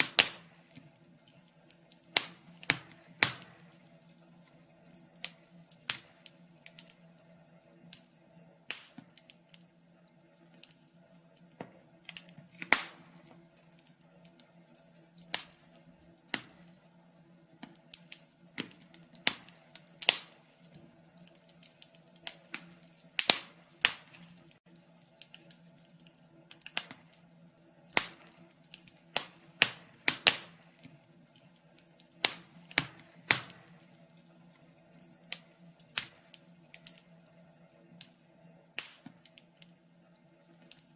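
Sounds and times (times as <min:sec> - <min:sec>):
wood fire crackling: 0:00.0 - 0:40.9.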